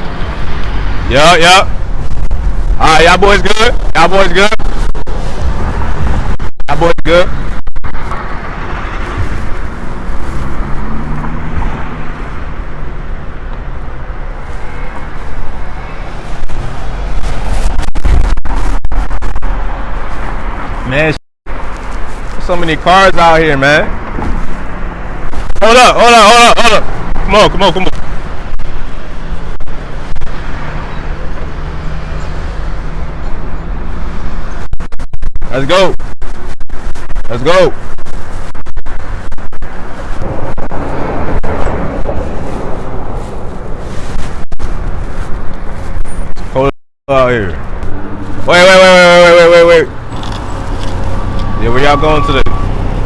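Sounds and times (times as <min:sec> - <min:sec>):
passing cars rumbling: 0:00.0 - 0:34.8, 0:37.8 - 0:46.4, 0:47.3 - 0:53.0
tyres on the road: 0:00.0 - 0:53.0
vehicle engine running: 0:49.9 - 0:53.0.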